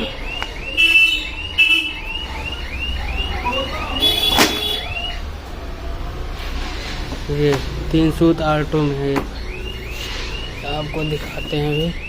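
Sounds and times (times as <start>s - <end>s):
electronic alarm chirp: 0.0s - 5.2s, 9.4s - 12.0s.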